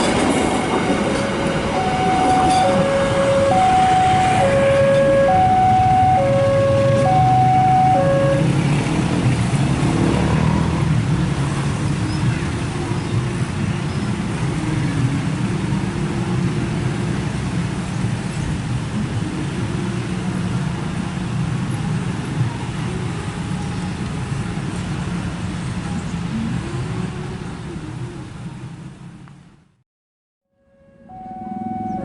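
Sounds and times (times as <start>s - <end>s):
rushing noise: 0.0s - 22.2s
diesel train engine: 0.0s - 27.2s.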